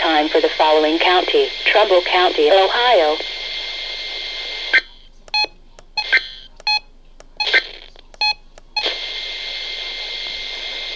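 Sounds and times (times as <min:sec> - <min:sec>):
radio receiver hiss: 0:00.0 - 0:05.0, 0:07.4 - 0:10.9.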